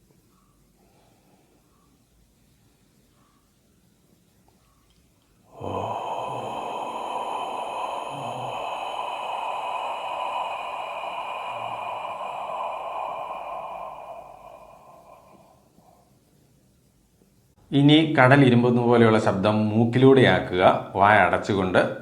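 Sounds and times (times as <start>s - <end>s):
breath exhaled with hiss: 5.5s - 16.1s.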